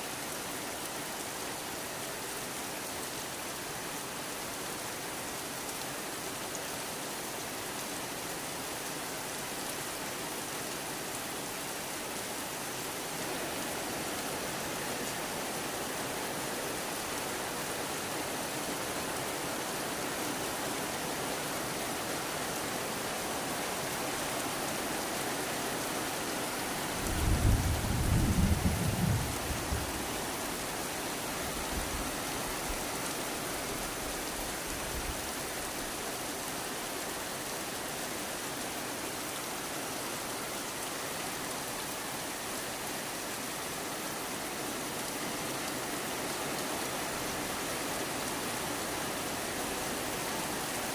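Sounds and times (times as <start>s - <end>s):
steady rain falling: 0.0s - 50.9s
low rumble of thunder: 27.0s - 30.1s.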